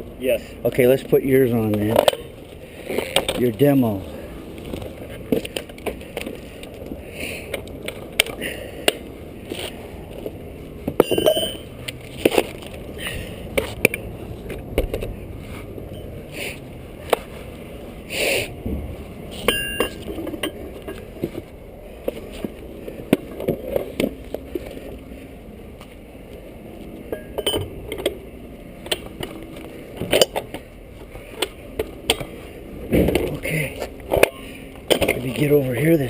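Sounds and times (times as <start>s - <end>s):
metal equipment clinking: 11.0s - 12.8s.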